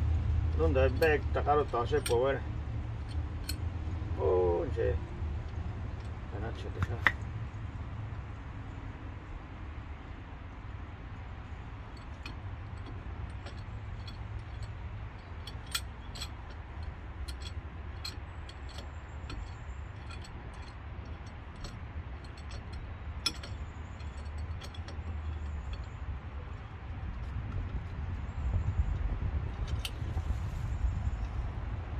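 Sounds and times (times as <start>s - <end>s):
clicks of small metal parts and tools: 6.0s - 7.2s, 12.0s - 26.0s
steady low hum: 10.5s - 31.9s.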